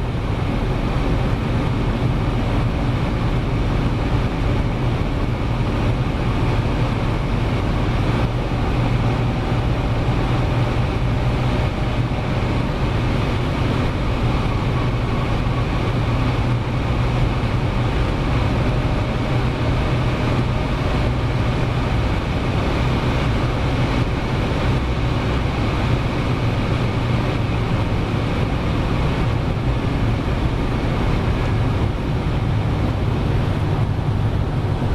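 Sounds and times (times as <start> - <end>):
car engine drone: 0.0 - 34.9.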